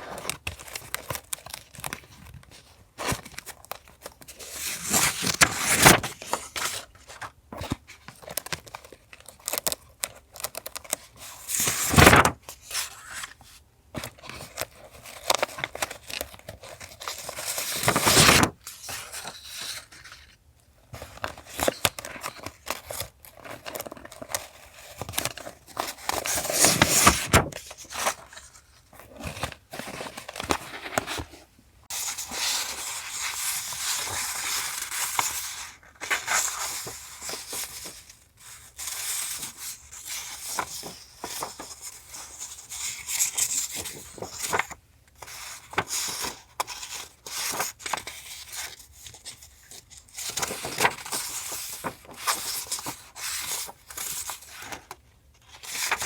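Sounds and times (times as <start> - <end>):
paper rustling and tearing: 3.1 - 7.3, 8.2 - 13.4, 14.3 - 20.4, 21.0 - 31.3, 38.8 - 54.8.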